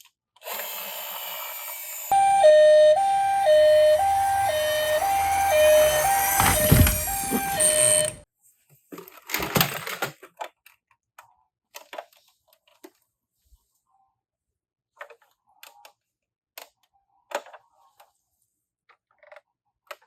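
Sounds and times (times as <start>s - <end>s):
toy electronic two-tone siren: 2.1s - 8.2s.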